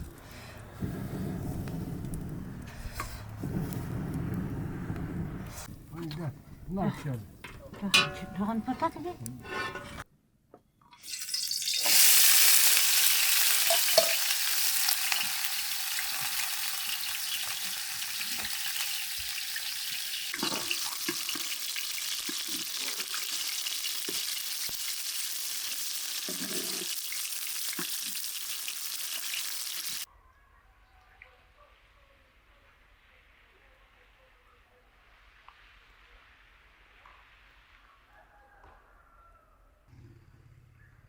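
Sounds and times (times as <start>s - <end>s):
food frying in oil: 11.0s - 30.1s.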